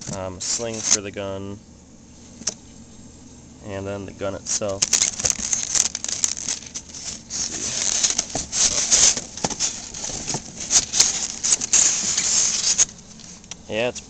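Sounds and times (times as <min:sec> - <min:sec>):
plastic wrapping crinkling: 0:04.5 - 0:13.6.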